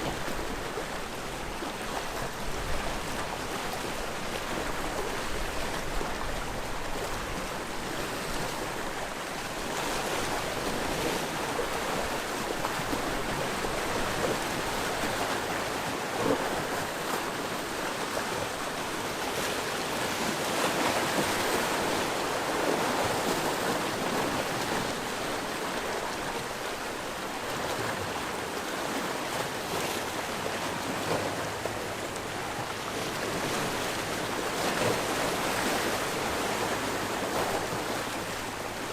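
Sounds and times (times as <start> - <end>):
sea waves washing on shore: 0.0 - 38.9.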